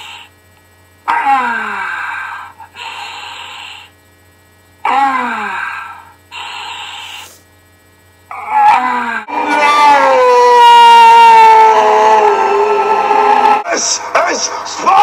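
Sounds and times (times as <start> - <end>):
hiss: 0.0 - 0.3, 2.8 - 3.9, 6.3 - 7.5.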